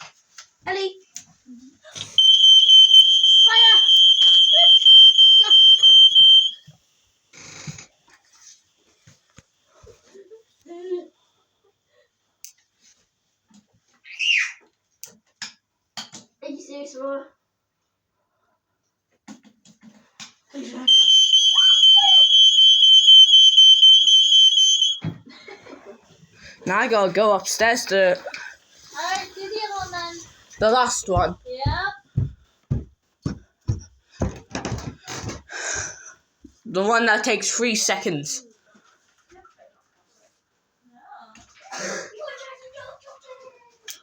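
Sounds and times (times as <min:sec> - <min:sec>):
smoke alarm beeping: 0:02.2 - 0:06.6, 0:20.9 - 0:25.1.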